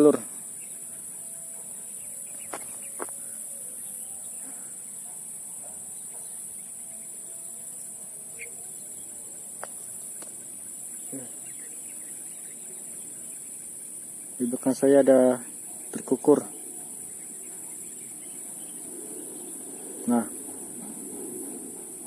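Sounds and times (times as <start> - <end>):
insect chorus buzzing: 0.0 - 22.0.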